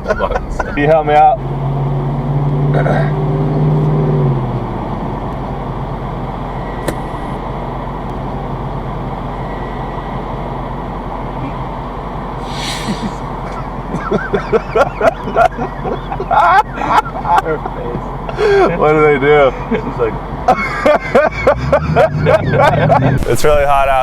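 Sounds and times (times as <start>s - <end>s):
car engine and road rumble: 0.0s - 13.9s, 15.2s - 24.0s
sharp click: 6.9s - 7.4s.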